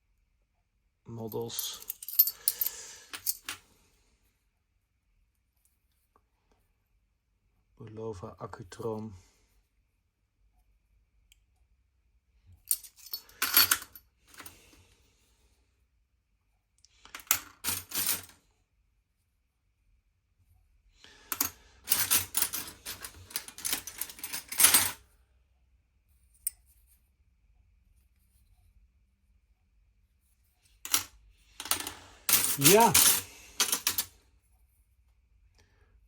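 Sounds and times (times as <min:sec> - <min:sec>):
small metal dies clinking: 0:30.9 - 0:34.1.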